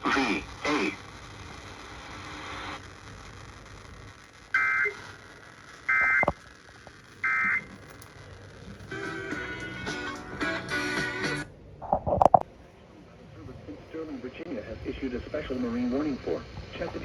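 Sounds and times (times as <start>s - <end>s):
faint radio hiss: 0.0s - 17.0s
two-tone digital data bursts: 4.5s - 5.1s.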